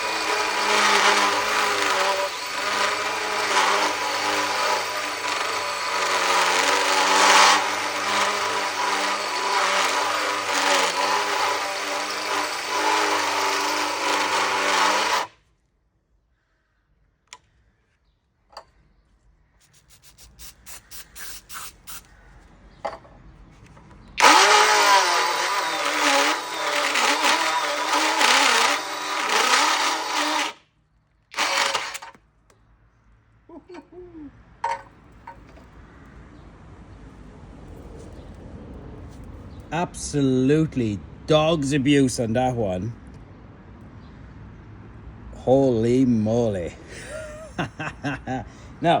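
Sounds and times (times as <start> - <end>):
hole saw grinding through steel: 0.0 - 15.4, 24.2 - 30.6, 31.3 - 32.2.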